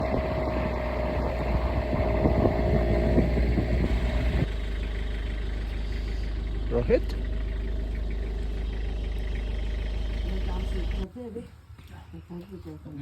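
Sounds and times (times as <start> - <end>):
vehicle engine rumbling: 0.0 - 13.0.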